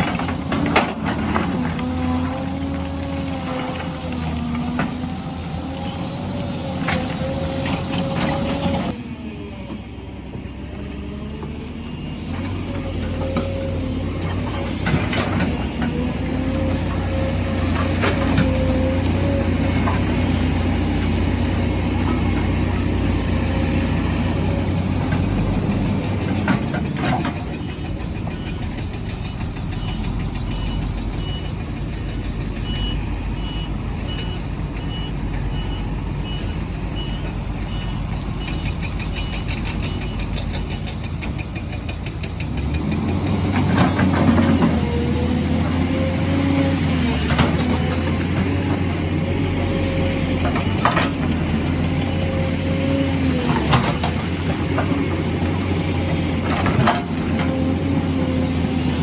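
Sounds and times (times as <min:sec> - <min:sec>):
diesel construction machinery running: 0:00.0 - 0:59.0
reversing alarm beeping: 0:27.6 - 0:40.8.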